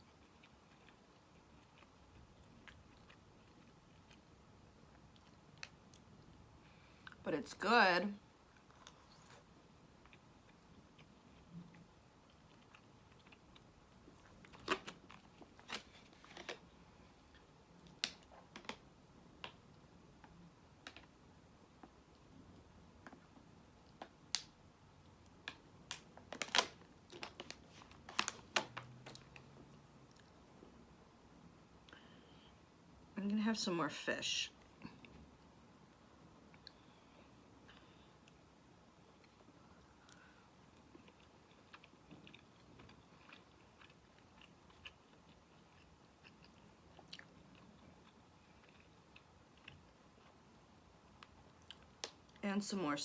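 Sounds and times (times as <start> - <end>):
chewing food: 0.0 - 6.4, 8.4 - 16.6, 39.1 - 52.4.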